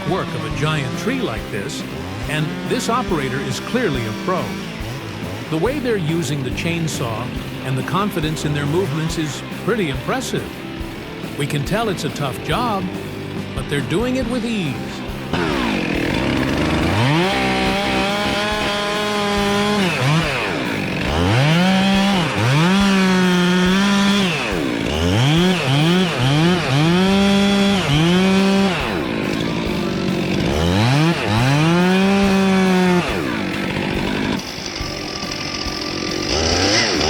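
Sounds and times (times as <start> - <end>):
chainsaw cutting tree trunk: 0.0 - 37.0.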